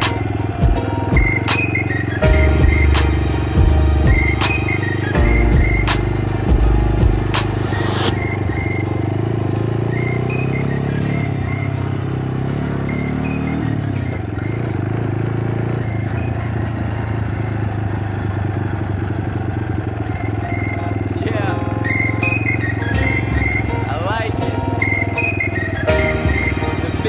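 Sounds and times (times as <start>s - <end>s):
motorcycle engine accelerating: 0.0s - 27.0s
short rush of noise: 7.2s - 8.3s.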